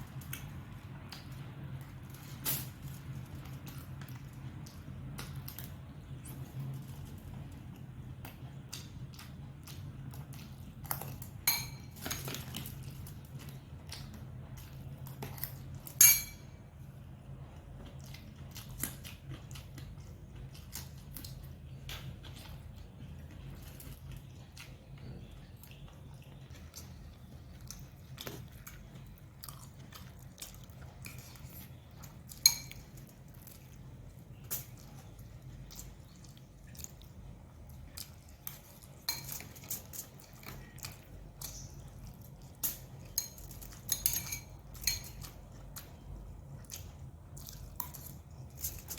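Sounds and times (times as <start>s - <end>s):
chewing: 0.0s - 16.0s, 17.2s - 48.9s
utensil clinking against dish: 11.4s - 12.3s, 16.0s - 16.5s, 32.4s - 32.9s, 43.2s - 45.3s.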